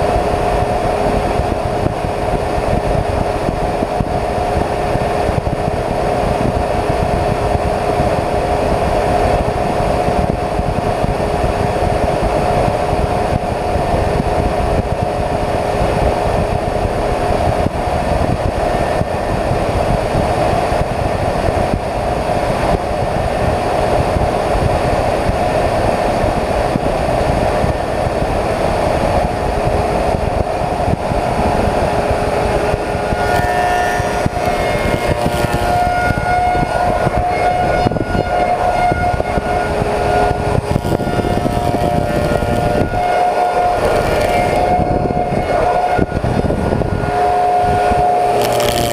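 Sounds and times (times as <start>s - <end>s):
lower machine hum: 0.0s - 48.9s
planing machine drone: 0.0s - 48.9s.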